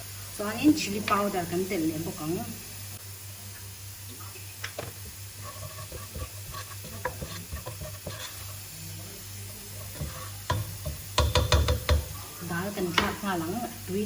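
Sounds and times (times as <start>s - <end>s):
spices frying in oil: 0.0s - 14.0s
utensil scraping pan: 5.0s - 8.6s, 9.8s - 11.0s
utensil knocking against pan: 10.0s - 12.1s.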